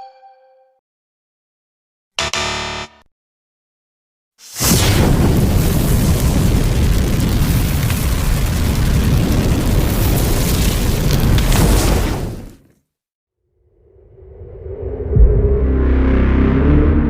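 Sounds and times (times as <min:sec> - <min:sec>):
large fire burning: 0:04.4 - 0:12.7.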